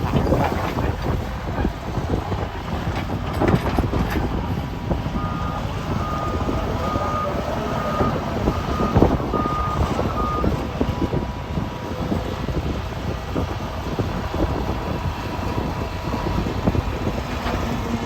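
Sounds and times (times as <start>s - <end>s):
diesel machinery rumble: 0.0s - 18.0s
reversing alarm beeping: 5.2s - 10.6s.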